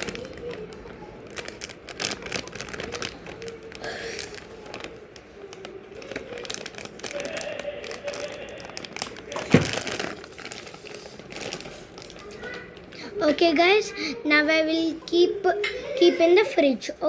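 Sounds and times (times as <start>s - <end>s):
plastic crinkling: 0.0s - 13.4s.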